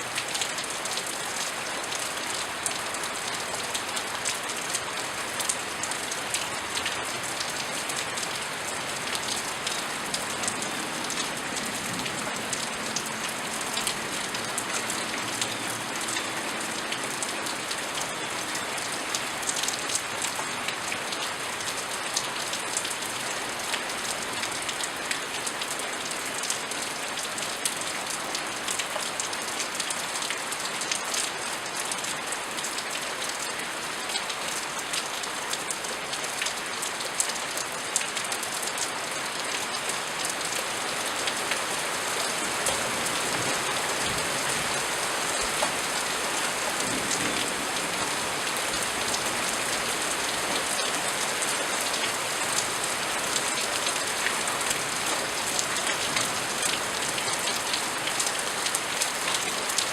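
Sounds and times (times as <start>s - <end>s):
raindrops pattering on hard surfaces: 0.0s - 59.9s.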